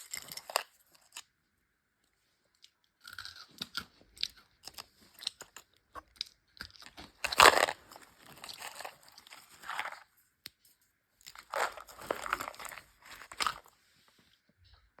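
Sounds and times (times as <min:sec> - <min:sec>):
chocolate crunching: 0:00.0 - 0:01.3, 0:02.5 - 0:10.2, 0:11.2 - 0:13.7.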